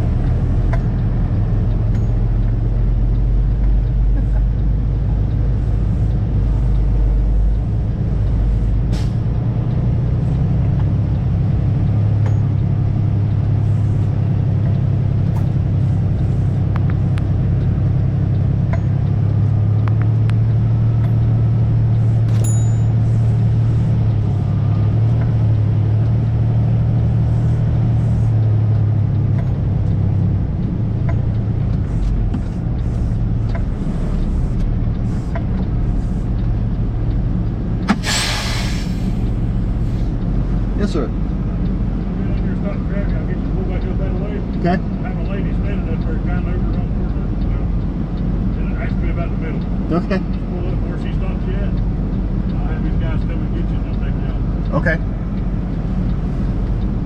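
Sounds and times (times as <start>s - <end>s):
diesel truck engine running: 0.0s - 57.0s.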